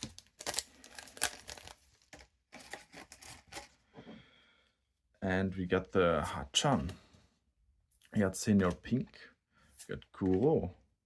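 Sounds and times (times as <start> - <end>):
foil wrapper tearing and crinkling: 0.0 - 3.6.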